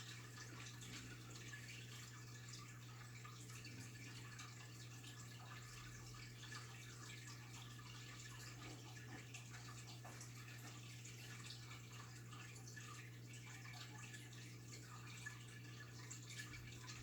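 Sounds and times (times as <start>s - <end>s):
water dripping in fish tank: 0.0s - 17.0s.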